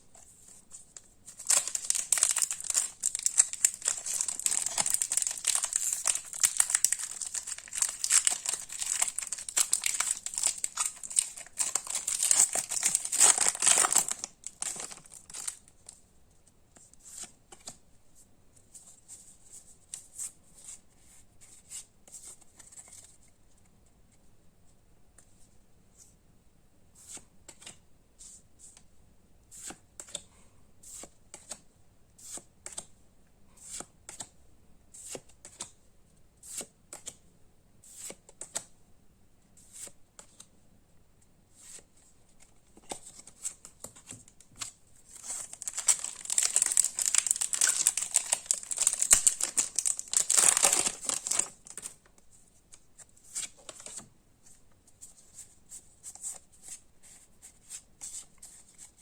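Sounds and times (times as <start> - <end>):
foil wrapper crinkling and tearing: 1.4 - 15.6, 45.2 - 51.9.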